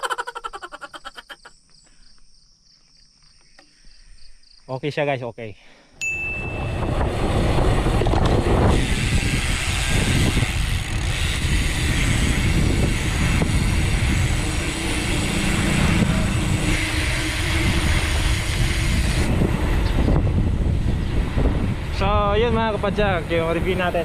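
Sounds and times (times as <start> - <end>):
wind buffeting microphone: 6.3 - 24.0
bicycle tyre road rumble: 6.5 - 24.0.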